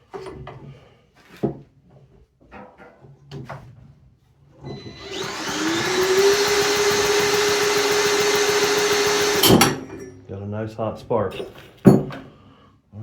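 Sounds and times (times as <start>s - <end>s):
drill whirring: 4.6s - 10.1s.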